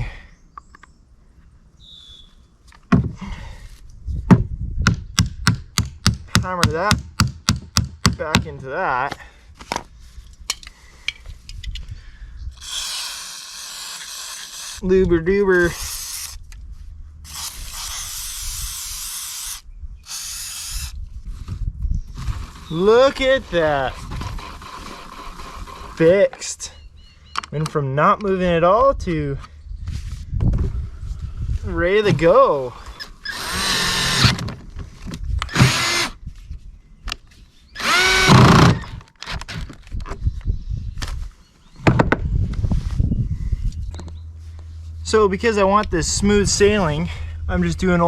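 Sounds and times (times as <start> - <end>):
power drill bursts: 12.6 - 14.8, 17.3 - 21.0, 33.3 - 34.3, 35.5 - 36.2, 37.8 - 39.0.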